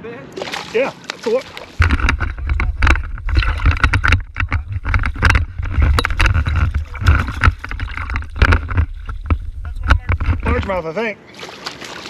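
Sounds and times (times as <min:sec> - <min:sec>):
fish knocking and rustling in kayak: 0:00.5 - 0:10.8
wind rumble on microphone: 0:01.8 - 0:10.8.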